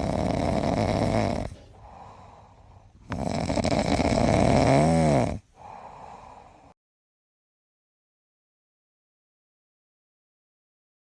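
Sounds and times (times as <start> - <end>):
quiet breath: 0.0 - 3.5, 5.4 - 6.8
dog snoring: 0.0 - 6.5.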